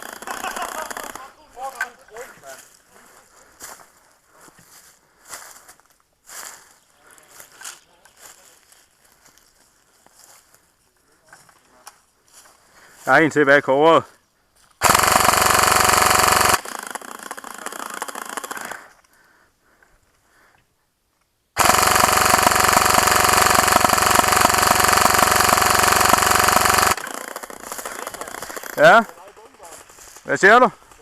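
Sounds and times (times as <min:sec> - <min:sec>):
airsoft machine gun bursts: 0:00.0 - 0:01.3, 0:14.8 - 0:18.9, 0:21.6 - 0:29.2.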